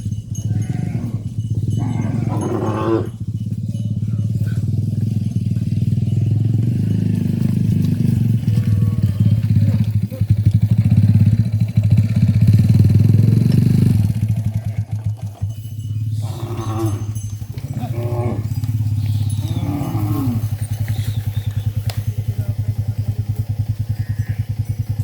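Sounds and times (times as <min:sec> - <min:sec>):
engine running: 0:00.0 - 0:25.0
cattle mooing: 0:00.3 - 0:03.2, 0:04.0 - 0:11.0, 0:16.0 - 0:21.9.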